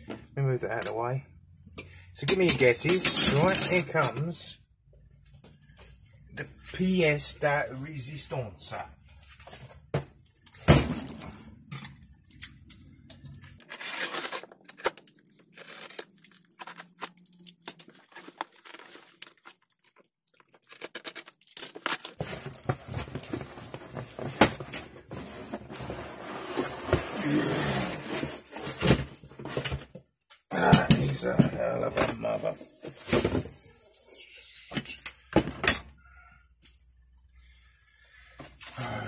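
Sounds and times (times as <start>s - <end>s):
packaging tearing and crinkling: 13.6s - 23.3s.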